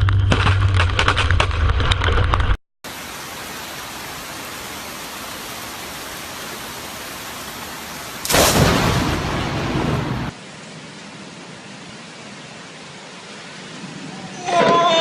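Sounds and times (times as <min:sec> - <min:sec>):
heavy rain hiss: 0:02.9 - 0:15.0
loud thunder clap: 0:08.2 - 0:10.3.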